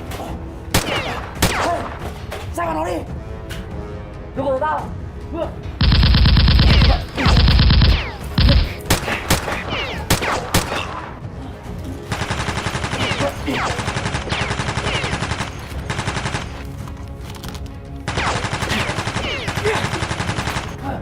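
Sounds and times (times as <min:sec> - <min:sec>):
background music: 0:00.0 - 0:21.0
gunshots: 0:00.7 - 0:02.3, 0:05.8 - 0:11.2, 0:12.1 - 0:16.7, 0:18.1 - 0:20.8
rapid automatic gunfire: 0:05.8 - 0:10.9, 0:12.1 - 0:16.6, 0:18.1 - 0:20.8.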